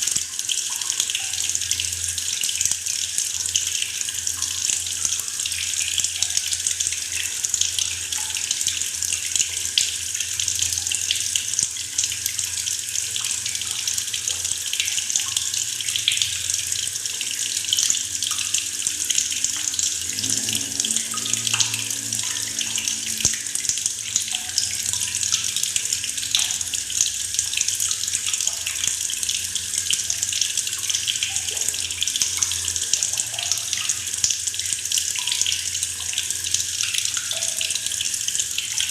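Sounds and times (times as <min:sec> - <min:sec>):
tap water pouring into bucket: 0:00.0 - 0:38.9.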